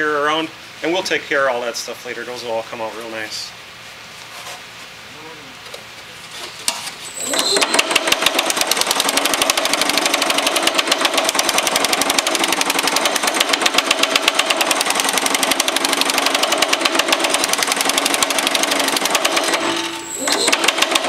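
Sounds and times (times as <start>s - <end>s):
power hammer pounding sheet metal: 7.3s - 21.0s.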